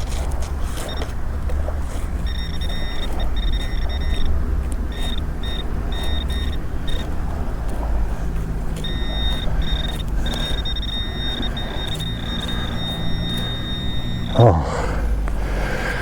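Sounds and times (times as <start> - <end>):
metal detector tone: 1.9 - 15.2.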